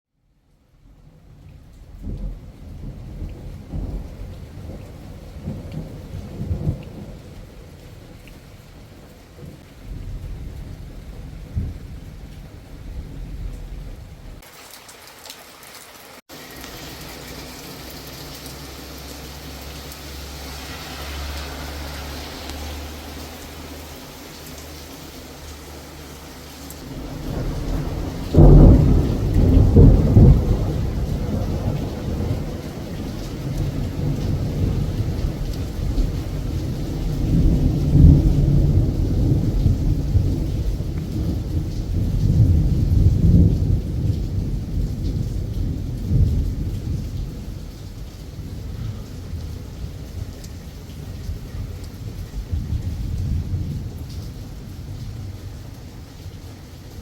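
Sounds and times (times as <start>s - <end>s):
steady rain: 0.2s - 57.0s
rolling thunder: 1.3s - 14.5s, 17.4s - 56.0s
loud thunder clap: 26.8s - 47.2s.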